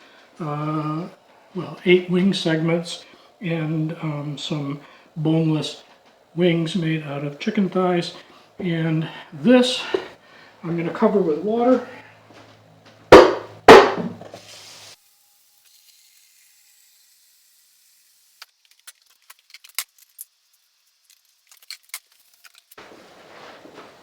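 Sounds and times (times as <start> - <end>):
stockpot knocking: 13.1 - 14.2
short hiss: 14.3 - 15.0.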